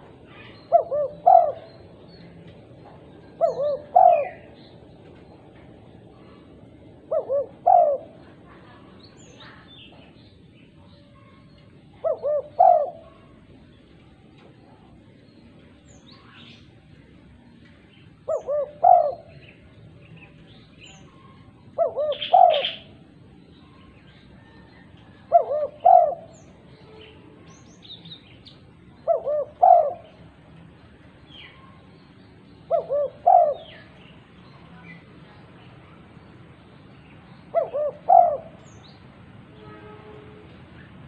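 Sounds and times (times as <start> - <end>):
dove cooing: 0.0 - 2.0, 3.2 - 4.6, 6.1 - 9.0, 12.0 - 13.4, 18.2 - 19.6, 21.1 - 23.1, 24.4 - 26.5, 29.0 - 30.2, 32.6 - 34.0, 37.5 - 38.7
small birds chirping: 0.0 - 39.3.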